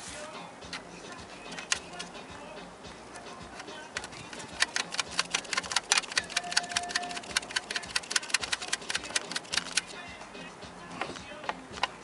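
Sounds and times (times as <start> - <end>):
ratchet wrench clicking: 1.4 - 2.2, 3.1 - 10.0.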